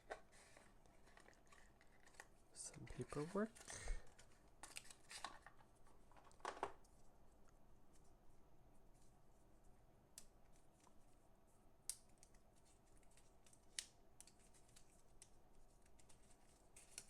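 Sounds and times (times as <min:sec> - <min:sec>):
packaging ticks and rustles: 0:00.0 - 0:07.0, 0:12.0 - 0:17.0.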